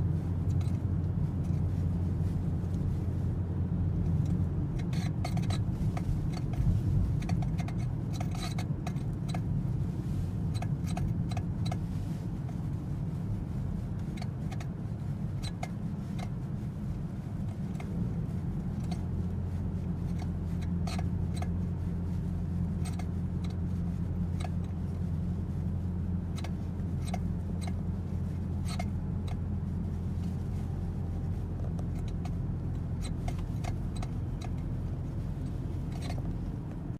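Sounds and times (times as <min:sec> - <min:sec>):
car low drone: 0:00.0 - 0:36.9
steering squeaks: 0:26.4 - 0:36.9.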